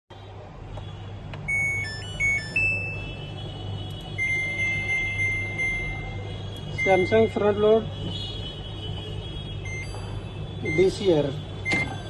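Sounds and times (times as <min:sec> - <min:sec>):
electronic beeps tune: 0:01.5 - 0:03.2, 0:04.2 - 0:06.2, 0:06.8 - 0:07.3, 0:09.7 - 0:09.9
long steady beep: 0:01.5 - 0:03.4, 0:04.2 - 0:07.4, 0:09.6 - 0:10.0, 0:11.6 - 0:12.0.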